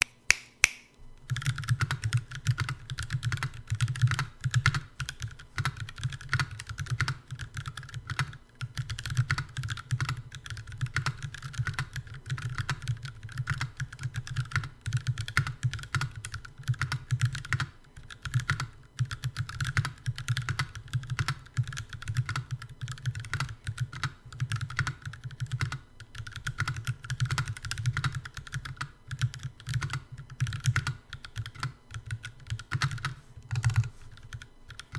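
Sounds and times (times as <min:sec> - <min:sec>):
mechanical keyboard typing: 0:01.3 - 0:34.9.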